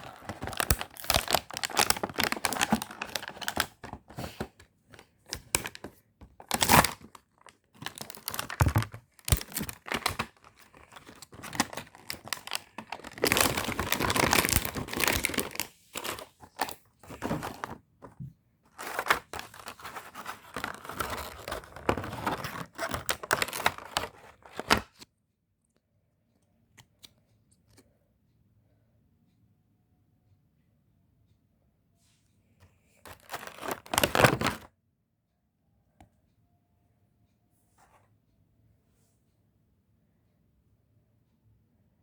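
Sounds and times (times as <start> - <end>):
packaging tearing: 0.0 - 4.5, 5.3 - 7.2, 7.8 - 17.8, 18.8 - 24.9, 33.1 - 34.7
packaging crinkling and rustling: 0.0 - 25.0, 33.1 - 34.7.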